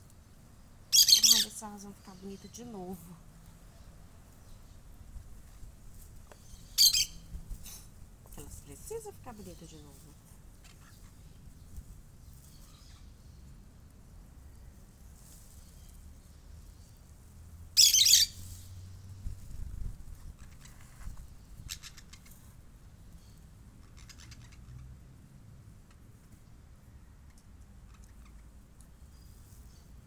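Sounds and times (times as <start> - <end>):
parakeet squawk: 0.9 - 1.5, 6.7 - 7.2, 17.8 - 18.4
parakeets chattering chirps: 0.9 - 2.6, 6.5 - 7.2, 17.8 - 18.4.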